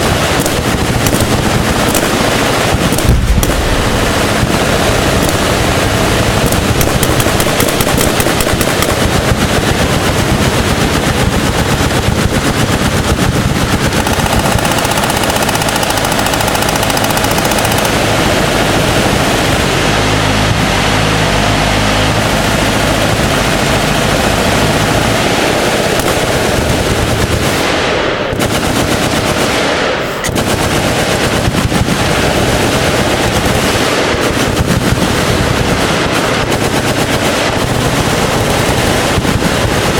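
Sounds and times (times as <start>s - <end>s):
machine guns firing: 0.0s - 39.9s.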